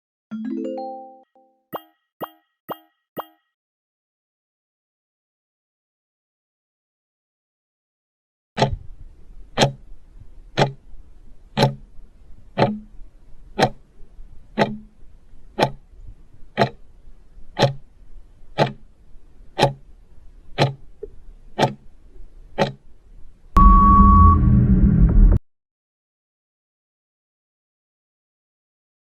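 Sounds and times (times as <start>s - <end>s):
clock ticking: 1.7s - 3.4s, 8.6s - 22.9s.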